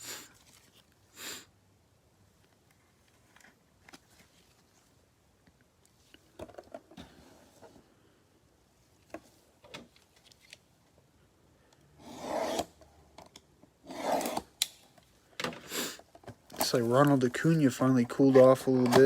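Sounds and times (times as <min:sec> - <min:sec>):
trading cards rubbing and clicking: 0:13.9 - 0:14.5.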